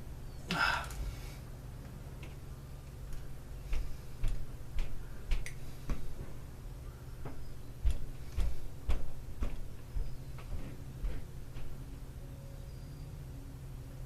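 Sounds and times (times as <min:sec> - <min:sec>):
steady low hum: 0:00.0 - 0:14.0
light taps on engine parts: 0:03.1 - 0:06.3.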